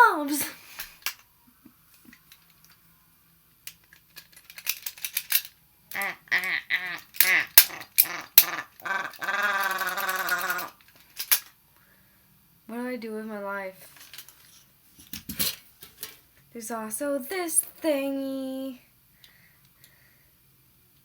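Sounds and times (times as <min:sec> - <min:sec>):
girl making animal-like noises: 0:00.0 - 0:00.6, 0:06.0 - 0:10.8
light clicks and rattles: 0:01.9 - 0:02.9, 0:03.6 - 0:05.6.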